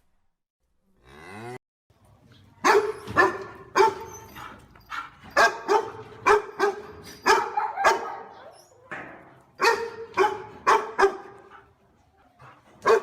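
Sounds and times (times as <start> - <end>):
dog barking: 2.6 - 4.2, 4.9 - 8.6, 9.6 - 11.7, 12.8 - 13.0.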